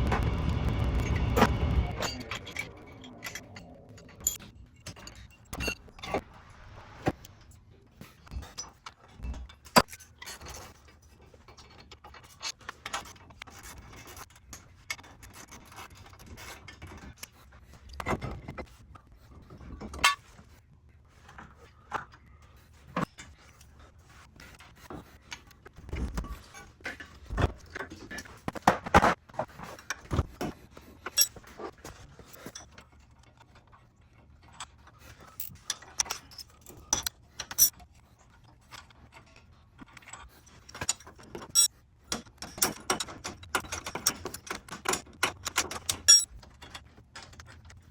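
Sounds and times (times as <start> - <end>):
metallic clinks of hand tools: 35.4 - 37.7, 40.8 - 41.7, 42.4 - 46.3.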